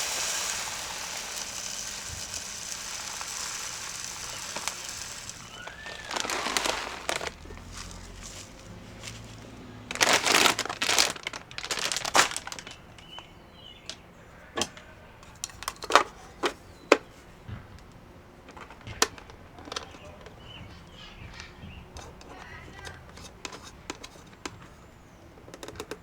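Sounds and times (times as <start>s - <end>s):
clicks and taps of seed settling: 0.0s - 9.2s, 25.4s - 26.0s
bird seed pouring from plastic bag: 0.0s - 13.2s.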